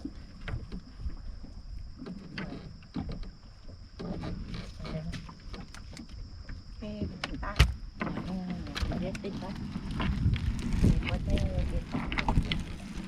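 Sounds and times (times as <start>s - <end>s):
water around boat: 0.0s - 13.0s
wind: 0.0s - 13.0s
low rumble: 8.6s - 13.0s.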